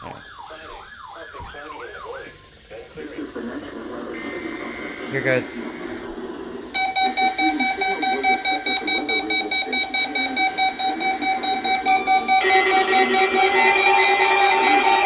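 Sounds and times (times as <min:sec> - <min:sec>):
lower alarm tone: 0:06.8 - 0:15.0
rapid pulsing alarm beep: 0:06.8 - 0:15.0.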